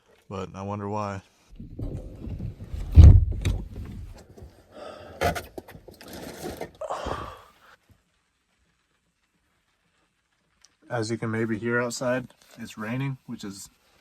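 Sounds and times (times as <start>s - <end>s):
rustling or scraping: 1.3s - 6.9s, 7.7s - 14.0s
loud low thump: 1.6s - 4.2s.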